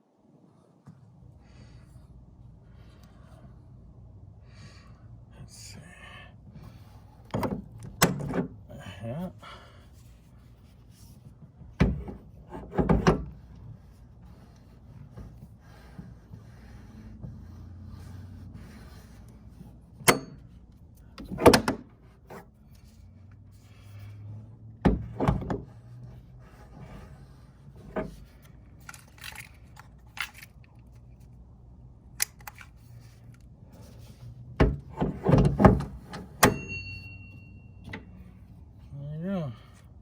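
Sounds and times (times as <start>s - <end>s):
short metallic ring: 20.1s - 20.5s, 36.4s - 38.2s
metal hardware clicking and clattering: 27.9s - 31.2s, 32.2s - 33.4s.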